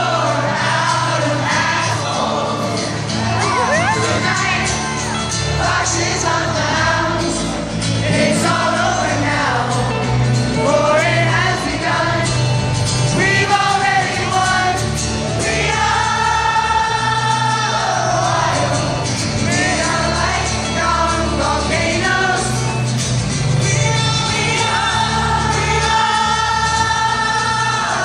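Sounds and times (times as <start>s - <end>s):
acoustic band playing: 0.0s - 28.0s
crowd singing along: 0.0s - 28.0s
person singing: 3.3s - 7.2s.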